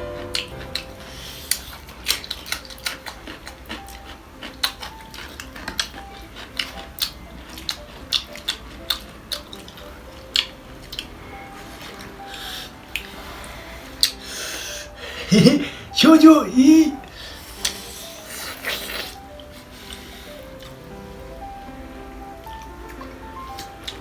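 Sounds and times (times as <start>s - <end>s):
chewing clicks and smacks: 0.0s - 11.2s, 11.8s - 13.2s, 13.9s - 14.3s, 17.0s - 21.0s, 22.4s - 24.0s.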